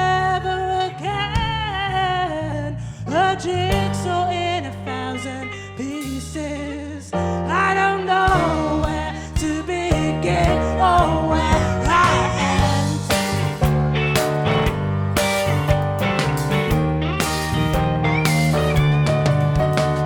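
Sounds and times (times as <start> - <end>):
bass: 0.0 - 20.0
piano: 0.0 - 20.0
drums: 1.4 - 1.8, 3.7 - 4.2, 5.9 - 6.6, 8.2 - 20.0
person singing sliding melody: 7.6 - 13.6.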